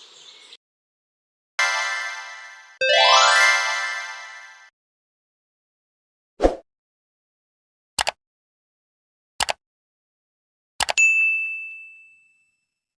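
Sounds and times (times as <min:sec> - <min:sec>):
quick double clicks: 0:09.4 - 0:09.6
bright ding: 0:11.0 - 0:12.6.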